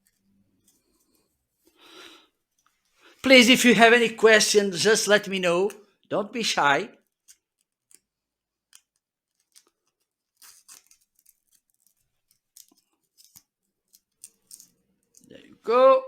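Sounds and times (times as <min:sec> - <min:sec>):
cable straps clicking and rustling: 0:07.0 - 0:15.4.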